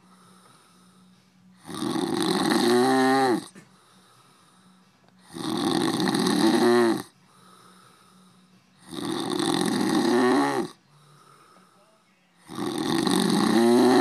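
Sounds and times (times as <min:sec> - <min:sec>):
quiet breathing: 0:00.0 - 0:01.7, 0:03.4 - 0:05.4, 0:07.1 - 0:08.9, 0:10.7 - 0:12.6
man snoring loudly: 0:00.0 - 0:03.6, 0:05.2 - 0:07.7, 0:08.8 - 0:11.3, 0:12.4 - 0:14.0.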